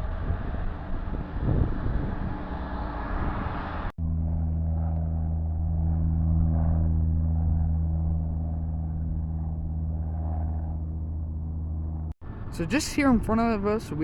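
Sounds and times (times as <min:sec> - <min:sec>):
steady low engine drone: 0:00.0 - 0:14.0.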